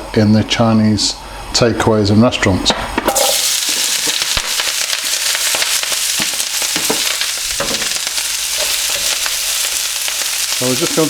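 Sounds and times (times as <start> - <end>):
crackling pops of frying: 3.0 - 11.0
vegetables sizzling in hot oil: 3.1 - 11.0.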